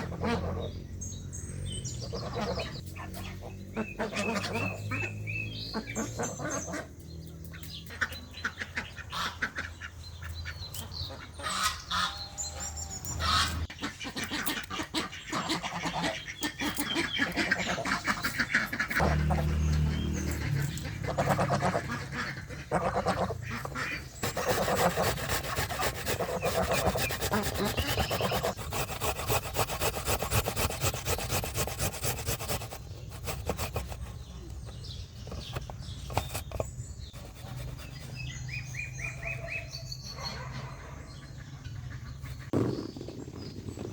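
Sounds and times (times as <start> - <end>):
ducks quacking: 0.0 - 0.8, 2.0 - 12.2, 13.2 - 34.2
geese honking: 13.2 - 31.0.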